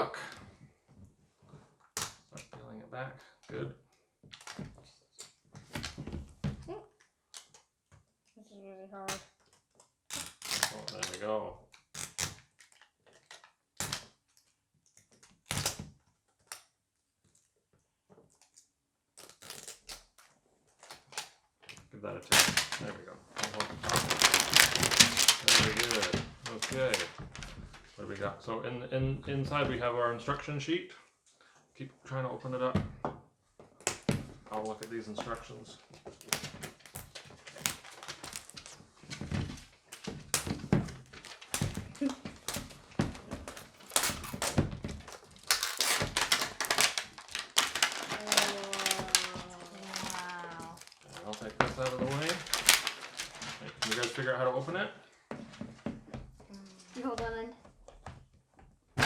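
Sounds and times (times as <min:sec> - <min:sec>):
packaging clicking and rustling: 0:09.1 - 0:15.8, 0:19.2 - 0:27.9, 0:33.9 - 0:54.3.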